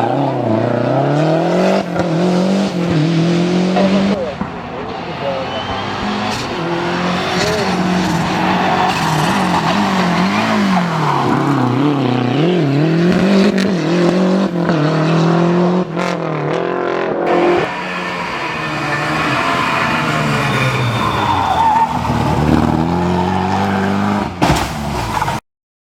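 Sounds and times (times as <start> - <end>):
rally car engine revving: 0.0 - 25.4.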